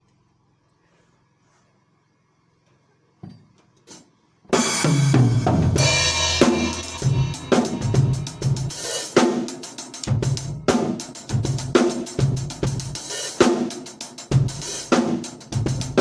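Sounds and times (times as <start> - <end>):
drum kit playing busy pattern: 4.5 - 16.0.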